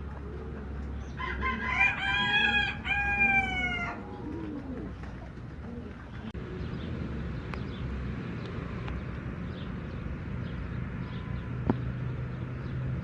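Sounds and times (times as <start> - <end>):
rooster crowing: 1.1 - 4.0.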